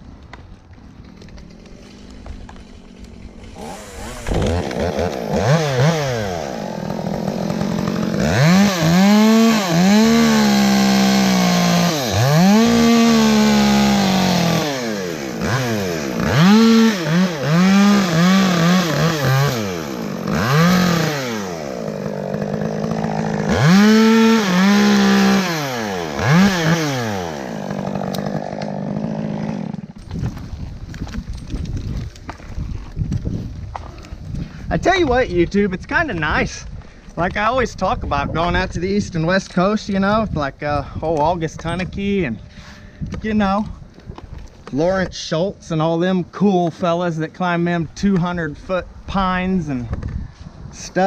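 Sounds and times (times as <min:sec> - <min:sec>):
chainsaw cutting wood: 0:00.2 - 0:34.2.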